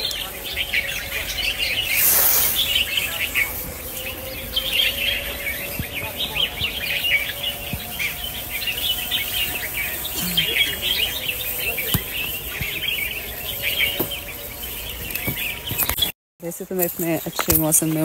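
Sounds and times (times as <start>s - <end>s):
small birds chirping: 0.0s - 18.0s.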